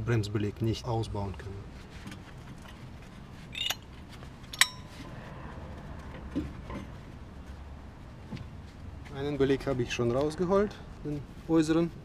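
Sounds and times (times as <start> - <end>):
metallic scrape: 3.4 - 4.0
sharp ringing metal clink: 4.6 - 4.9.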